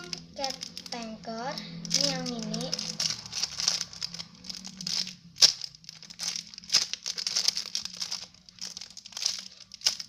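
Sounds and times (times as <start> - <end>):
faint low hum: 0.0 - 10.0
plastic packaging crinkling: 0.0 - 10.0.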